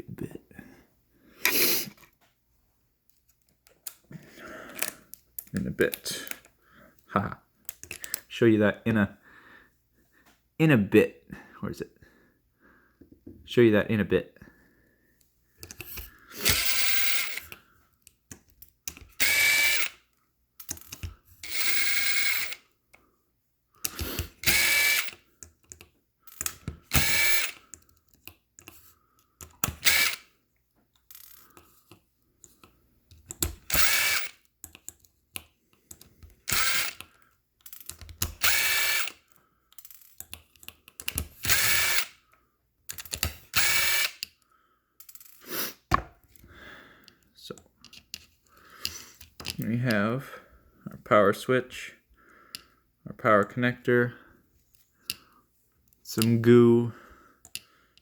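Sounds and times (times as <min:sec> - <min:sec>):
electric screwdriver whining: 0:16.4 - 0:17.6, 0:19.0 - 0:20.0, 0:21.4 - 0:22.6, 0:23.9 - 0:25.2, 0:26.4 - 0:27.6, 0:29.7 - 0:30.3, 0:33.6 - 0:34.4, 0:36.4 - 0:37.1, 0:37.8 - 0:39.2, 0:41.4 - 0:42.2, 0:43.5 - 0:44.2.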